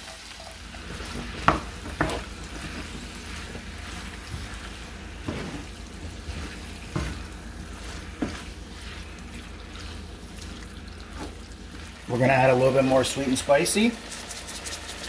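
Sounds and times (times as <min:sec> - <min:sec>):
food sizzling in a pan: 0:00.0 - 0:15.0.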